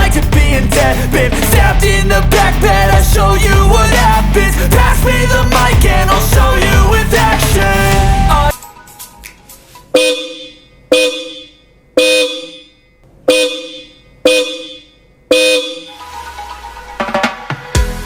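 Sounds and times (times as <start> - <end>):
music: 0.0 - 9.9, 15.9 - 18.0
dual-tone electric horn honks: 10.0 - 12.7, 13.3 - 16.1.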